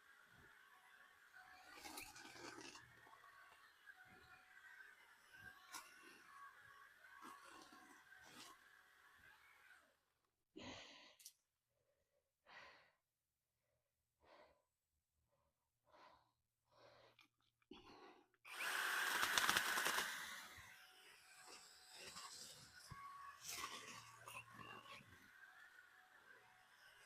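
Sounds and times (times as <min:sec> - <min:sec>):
small electric saw running: 0:18.5 - 0:27.0.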